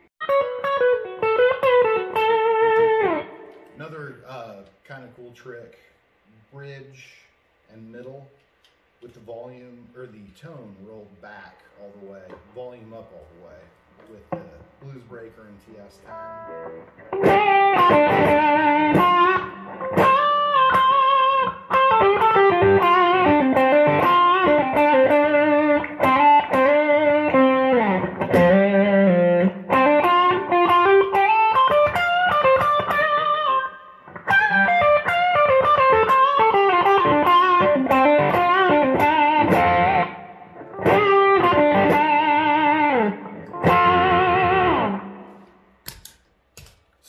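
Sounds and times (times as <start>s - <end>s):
overdriven electric guitar lead: 0.0s - 3.8s, 16.0s - 45.5s.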